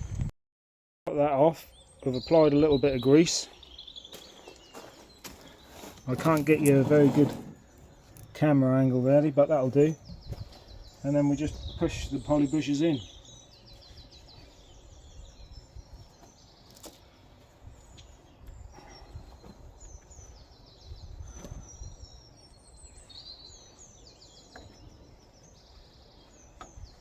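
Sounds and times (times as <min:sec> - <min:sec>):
small birds chirping: 0:01.1 - 0:27.0.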